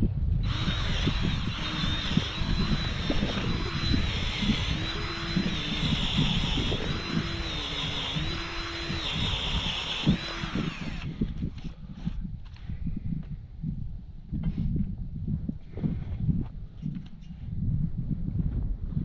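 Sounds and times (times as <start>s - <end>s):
power drill motor whining: 0.4s - 11.7s.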